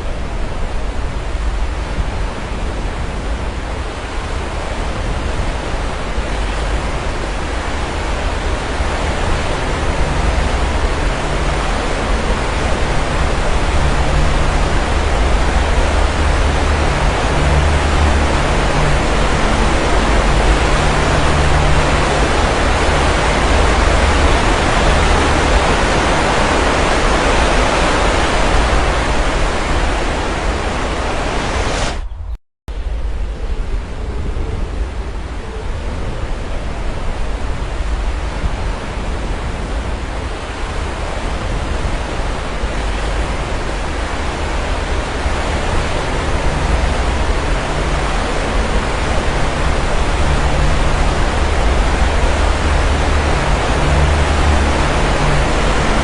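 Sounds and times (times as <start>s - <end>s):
sea waves washing onto shore: 0.0s - 32.0s, 32.9s - 56.0s.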